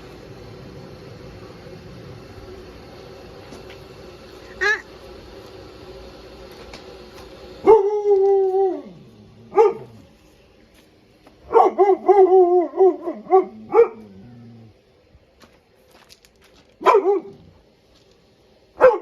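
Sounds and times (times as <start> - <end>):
dog howling: 7.6 - 10.0, 11.5 - 14.8
dog barking: 9.5 - 10.0, 11.5 - 12.3, 12.9 - 14.0, 16.8 - 17.4, 18.8 - 19.0.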